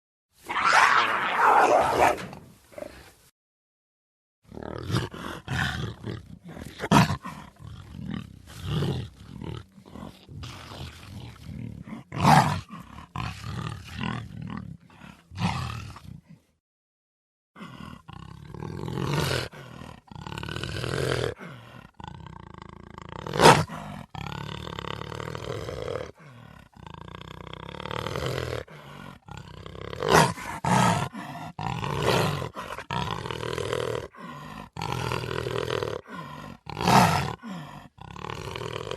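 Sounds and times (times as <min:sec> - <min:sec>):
big cat roaring: 0:00.4 - 0:03.0, 0:04.5 - 0:16.4, 0:17.6 - 0:38.9.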